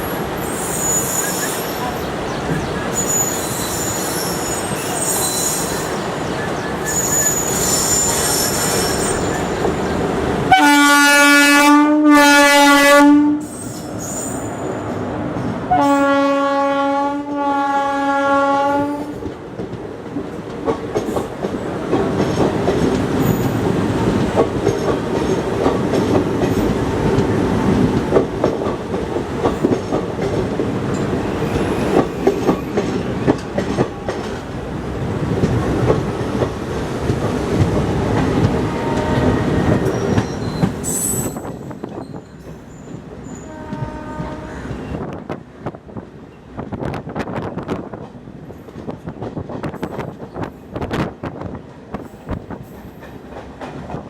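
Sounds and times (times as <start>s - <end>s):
electric locomotive horn blasts: 10.5s - 13.5s, 15.7s - 19.2s, 38.6s - 39.6s, 43.4s - 45.0s
train wheels clattering over rail joints: 19.2s - 44.4s.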